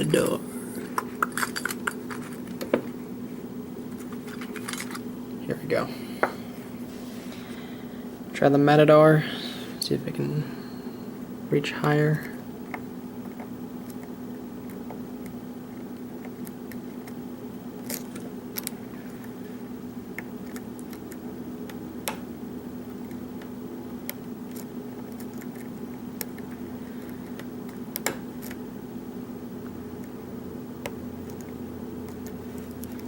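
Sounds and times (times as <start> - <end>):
steady low hum: 0.0 - 33.0.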